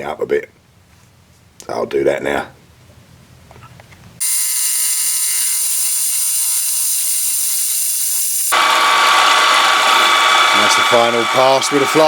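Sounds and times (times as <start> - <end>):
milling machine whine: 4.2 - 12.0.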